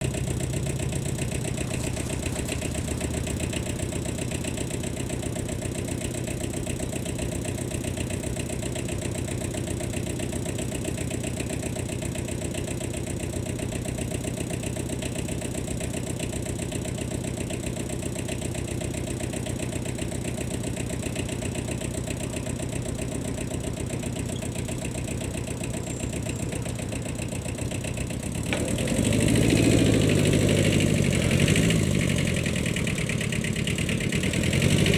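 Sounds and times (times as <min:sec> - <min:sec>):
tractor engine revving: 0:00.0 - 0:06.7, 0:25.4 - 0:34.9
diesel tractor engine idling: 0:00.0 - 0:34.9.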